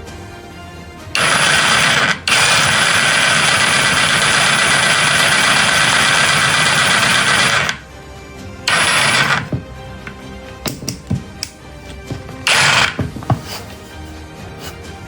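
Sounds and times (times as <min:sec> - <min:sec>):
jigsaw sawing through wood: 0:01.2 - 0:07.8, 0:08.7 - 0:09.6, 0:12.3 - 0:13.6.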